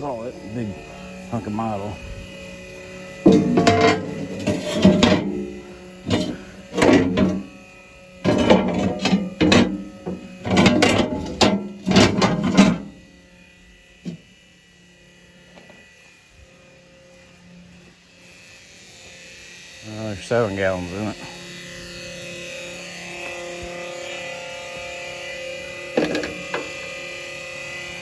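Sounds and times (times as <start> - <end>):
steel parts clanking together: 3.2 - 7.5, 8.2 - 12.9.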